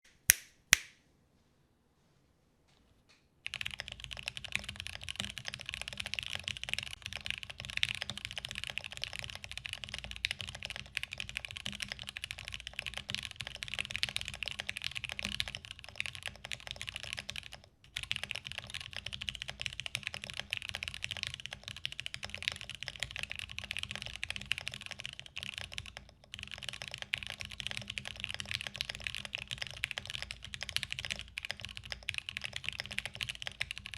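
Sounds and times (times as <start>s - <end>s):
sharp click: 0.0s - 1.0s
mechanical keyboard typing: 3.4s - 33.9s.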